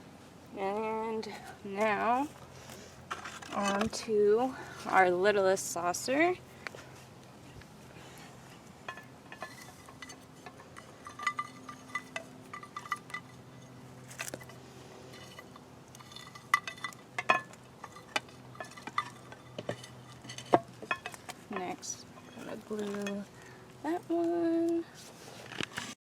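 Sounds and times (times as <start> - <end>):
clay pots clinking: 8.0 - 23.6.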